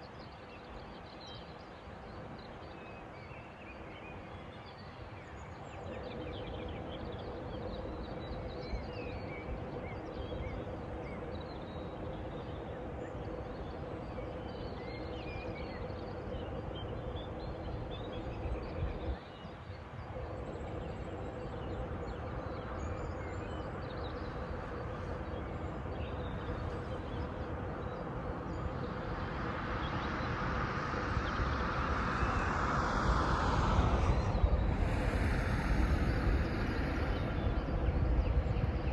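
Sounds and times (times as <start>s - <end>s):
steady low hum: 5.1s - 38.9s
rushing noise: 28.6s - 38.9s.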